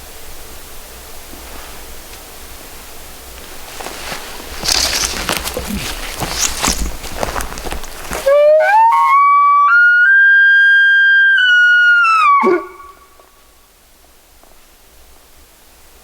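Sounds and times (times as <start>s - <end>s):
elk bugling: 4.6s - 13.3s.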